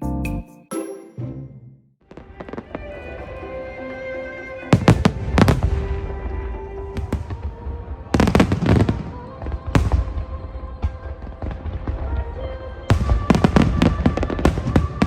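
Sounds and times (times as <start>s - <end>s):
music with sustained notes: 0.0s - 15.0s
fireworks bursting: 2.1s - 3.5s, 4.7s - 15.0s.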